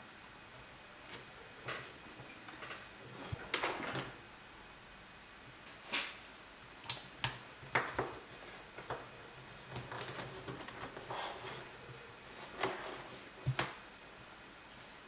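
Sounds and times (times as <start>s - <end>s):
soft rustling: 0.0s - 4.2s, 7.6s - 13.8s.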